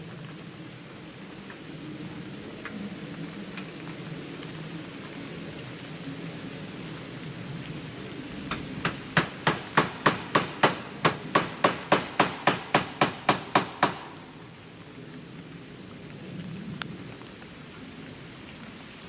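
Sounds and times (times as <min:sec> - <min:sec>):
hammer driving nails: 0:08.8 - 0:14.2.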